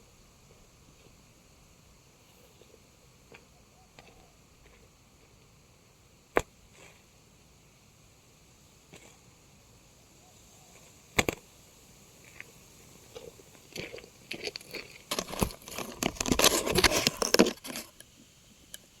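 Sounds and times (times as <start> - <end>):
crackling and rustling: 12.2 - 18.2.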